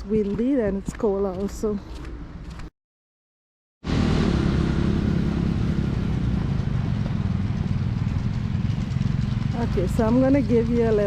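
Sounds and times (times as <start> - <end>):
engine running: 3.8 - 11.0.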